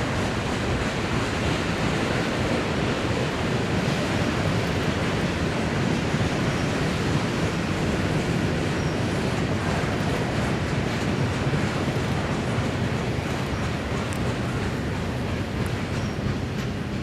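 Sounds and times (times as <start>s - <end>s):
freight train rolling past: 0.0s - 17.0s.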